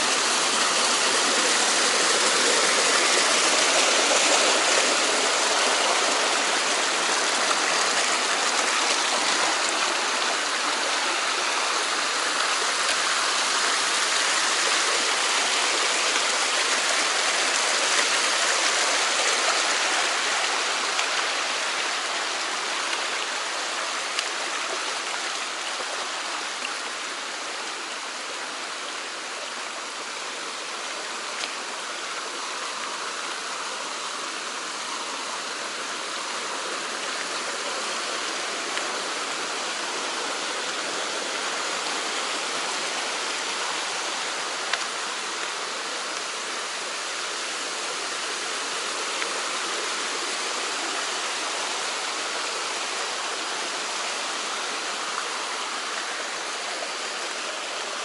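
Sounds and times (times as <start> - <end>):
mountain stream rushing: 0.0 - 58.0.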